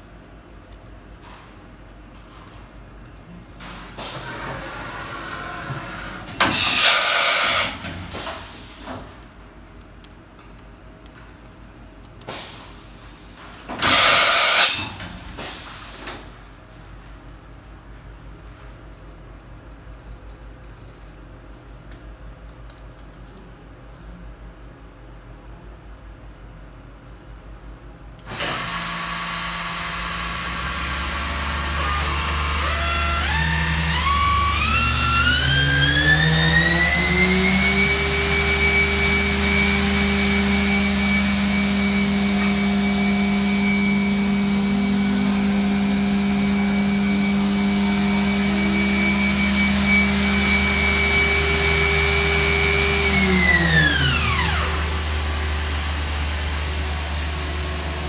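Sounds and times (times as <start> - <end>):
low machine hum: 16.3 - 28.4
spindle whine: 16.8 - 58.0.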